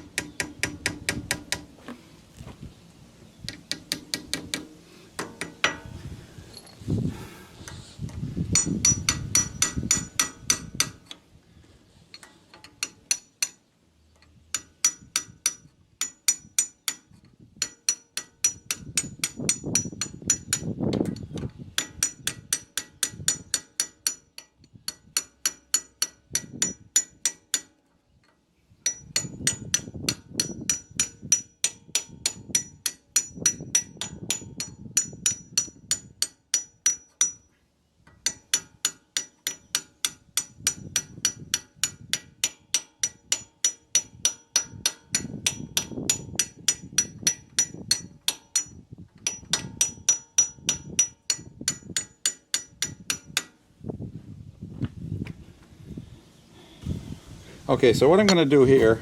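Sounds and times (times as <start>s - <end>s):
hammer striking metal: 8.6s - 11.0s, 38.2s - 53.5s.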